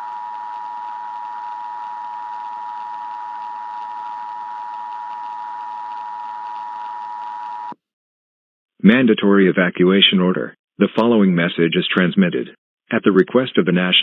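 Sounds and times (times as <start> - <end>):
two-tone alarm signal: 0.0 - 7.8.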